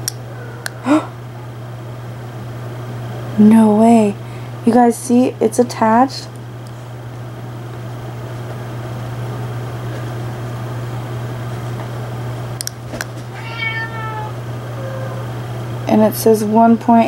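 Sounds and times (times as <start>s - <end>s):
steady low hum: 0.0s - 17.0s
cat meowing: 13.3s - 15.4s.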